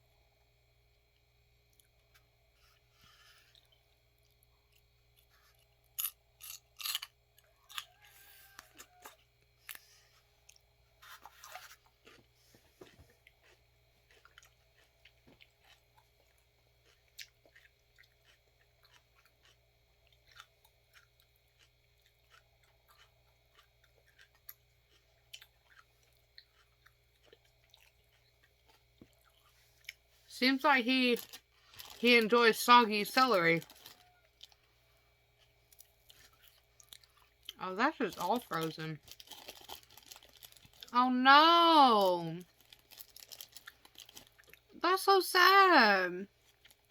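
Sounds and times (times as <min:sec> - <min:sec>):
faint chewing clicks: 0:00.9 - 0:30.1, 0:33.6 - 0:41.0
celery crunching: 0:04.7 - 0:34.7, 0:35.4 - 0:44.8.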